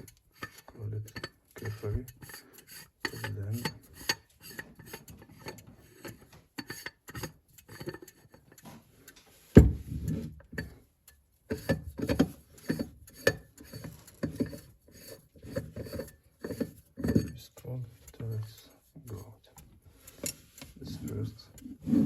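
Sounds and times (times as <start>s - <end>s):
metal cover scraping and clicking: 0.0s - 19.3s, 20.0s - 22.0s
metal knock: 9.6s - 9.9s.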